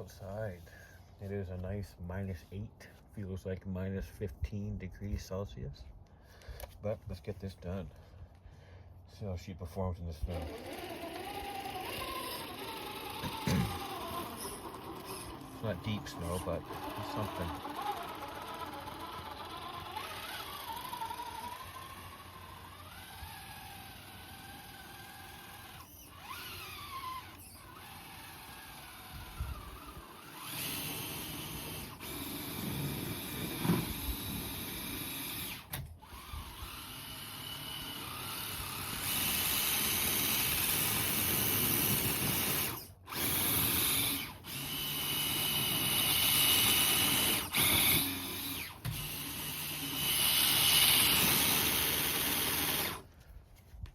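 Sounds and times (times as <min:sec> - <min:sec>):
electric motor and gears whining: 0:10.2 - 0:53.2.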